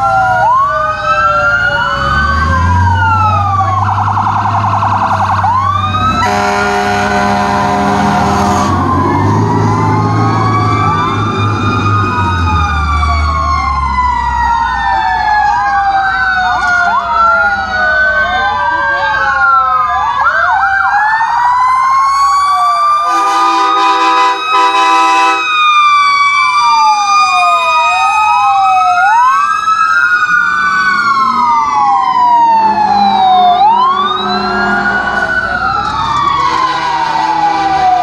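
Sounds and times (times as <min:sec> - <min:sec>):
fire engine sirens wailing: 0:00.0 - 0:38.0
steady horn blast: 0:06.1 - 0:09.0, 0:23.1 - 0:25.5, 0:36.3 - 0:38.0.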